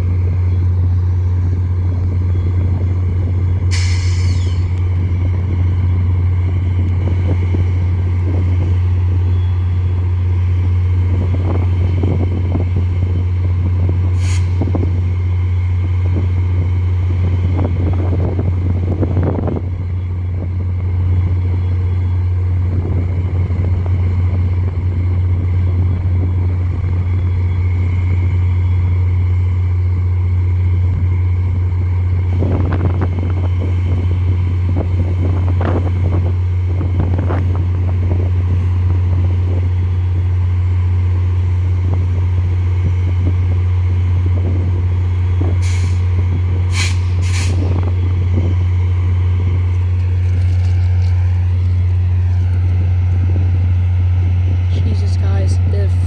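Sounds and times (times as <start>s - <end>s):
diesel train low hum: 0.0s - 56.0s
air brake hisses: 3.7s - 4.8s, 14.2s - 14.6s, 45.6s - 46.1s, 46.7s - 47.7s.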